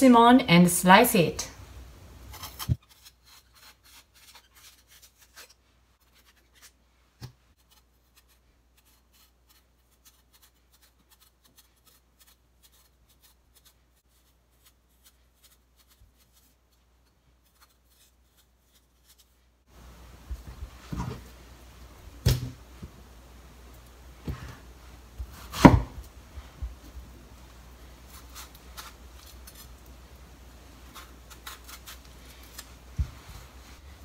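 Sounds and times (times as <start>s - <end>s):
blade scraping fruit skin: 2.3s - 6.8s, 30.9s - 32.7s.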